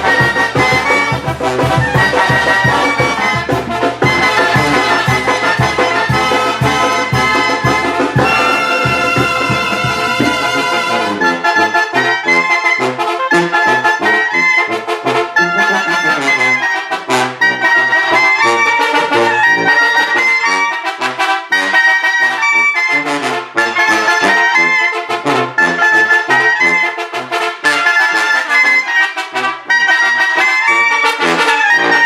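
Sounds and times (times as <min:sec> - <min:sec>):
percussion hits: 0:00.0 - 0:11.2, 0:17.0 - 0:20.6
brass band playing dance tune: 0:00.0 - 0:32.0.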